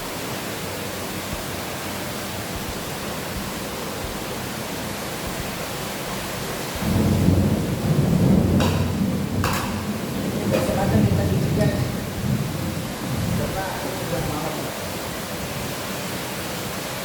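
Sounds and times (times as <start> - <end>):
heavy rain hiss: 0.0 - 17.0
thunder rumble: 6.8 - 14.8.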